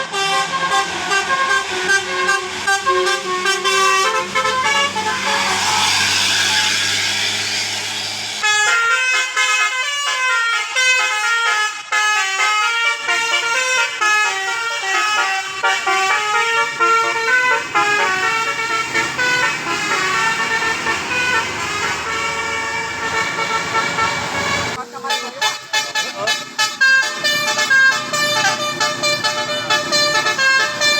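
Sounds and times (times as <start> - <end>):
musical air horn tune: 0.0 - 7.6, 8.4 - 30.9
low engine hum: 0.1 - 8.4, 15.6 - 24.8
rush of noise: 4.2 - 8.4.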